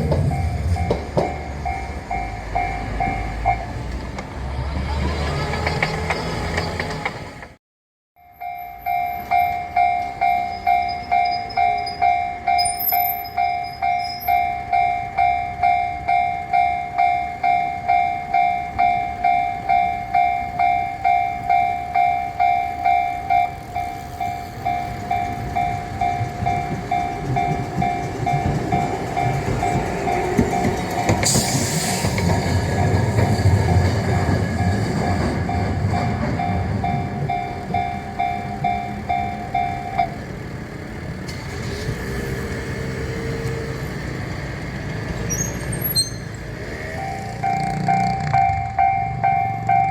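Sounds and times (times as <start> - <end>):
train rumble: 0.0 - 7.6, 8.4 - 49.9
level crossing bell ringing: 8.2 - 31.2, 35.4 - 40.2, 47.0 - 49.9.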